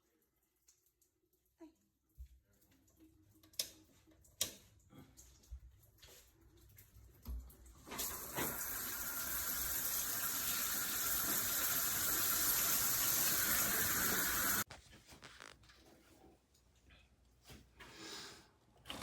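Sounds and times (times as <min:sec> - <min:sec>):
shower spray: 0:07.9 - 0:14.7.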